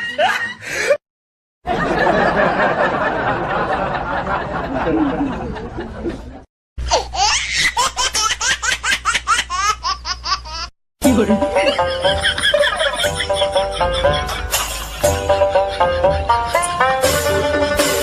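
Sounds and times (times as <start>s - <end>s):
crowd laughing: 0.0s - 1.0s, 1.6s - 6.5s, 11.1s - 18.0s
high-pitched pulsing laugh: 11.6s - 18.0s.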